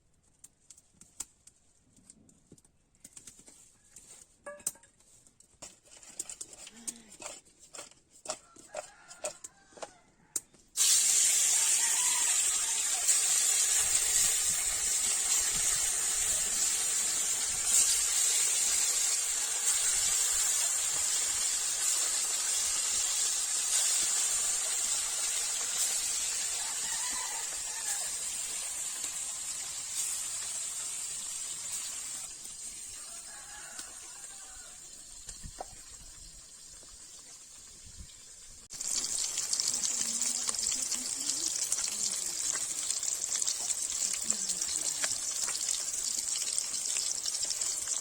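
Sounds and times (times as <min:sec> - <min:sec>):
food sizzling in hot oil: 0:10.8 - 0:48.0.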